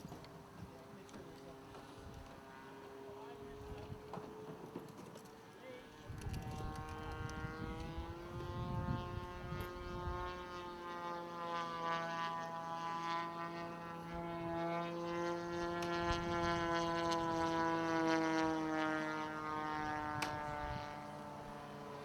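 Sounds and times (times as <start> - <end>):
model airplane engine droning: 0.0 - 22.0
wind rumble: 6.1 - 10.4.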